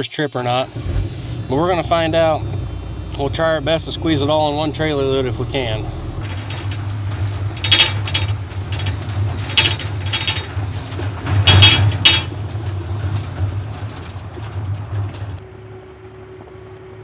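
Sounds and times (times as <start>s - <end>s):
steady hum: 0.6s - 6.2s
metallic clanks and rattles: 0.6s - 15.4s
truck engine drone: 0.6s - 17.0s.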